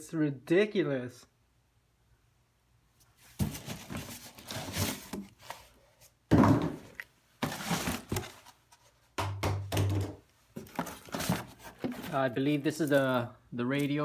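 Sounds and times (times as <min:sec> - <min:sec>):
cardboard rustling and scraping: 0:03.1 - 0:09.0, 0:10.5 - 0:14.0.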